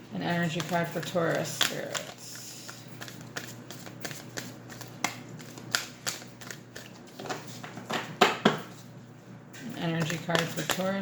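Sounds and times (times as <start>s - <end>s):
cards being shuffled: 0.4s - 7.8s, 10.0s - 11.0s
card slaps: 3.0s - 7.4s.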